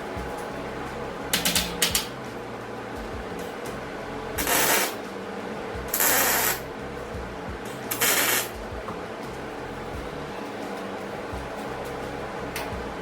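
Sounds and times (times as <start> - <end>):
steady low hum: 0.0 - 13.0
welding hissing crackle: 1.3 - 5.2, 5.8 - 7.0, 7.6 - 8.6.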